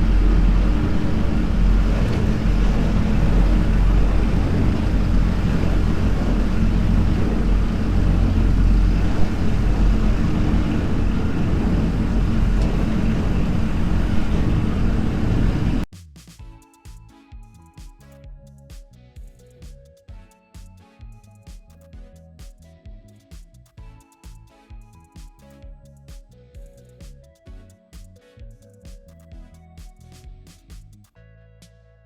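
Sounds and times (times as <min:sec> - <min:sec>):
tractor diesel engine running: 0:00.0 - 0:15.9
quiet music: 0:16.0 - 0:32.0.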